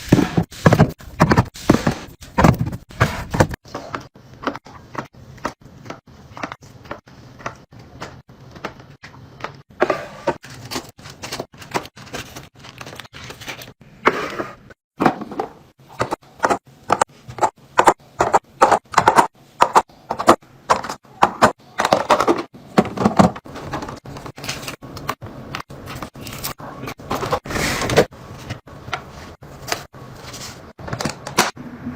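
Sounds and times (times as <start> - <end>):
containers being handled and set down: 19.0 - 31.6.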